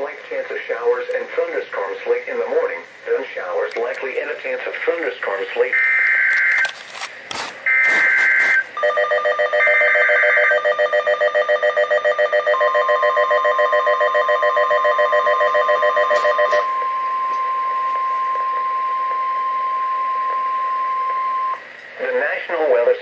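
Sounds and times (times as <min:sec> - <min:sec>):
steady warning alarm tone: 0:05.6 - 0:06.7, 0:07.6 - 0:21.6
pulsing multi-tone alarm beep: 0:07.7 - 0:21.6.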